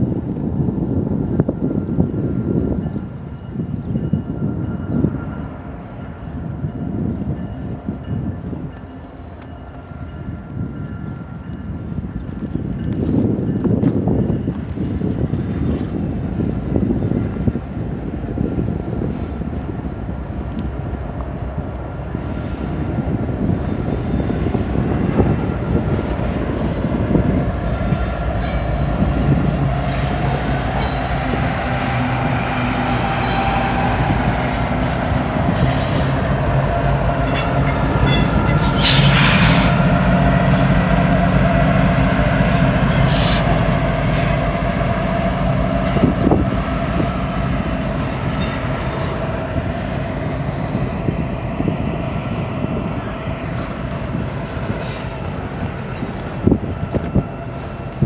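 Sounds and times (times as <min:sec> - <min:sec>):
train wheels rumbling on rail: 0:00.0 - 0:58.0
high wheel squeal: 0:37.2 - 0:39.9, 0:42.4 - 0:44.7, 0:45.8 - 0:47.0.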